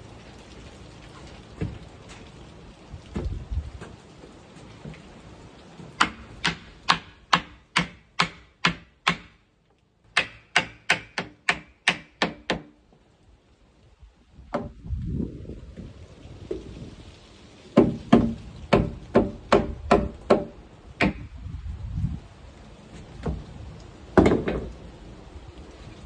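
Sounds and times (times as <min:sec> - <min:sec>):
hammer striking nails: 0:06.0 - 0:09.4, 0:10.1 - 0:12.8, 0:17.8 - 0:21.3.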